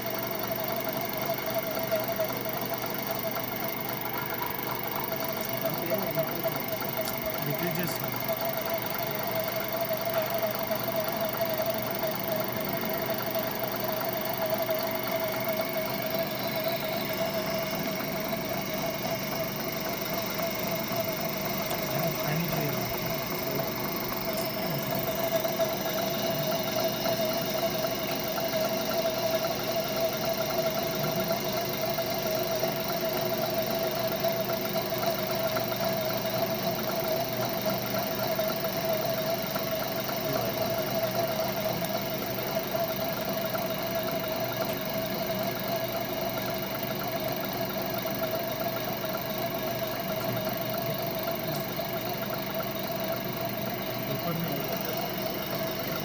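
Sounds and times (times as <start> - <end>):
lathe motor humming and whining: 0.0 - 56.0.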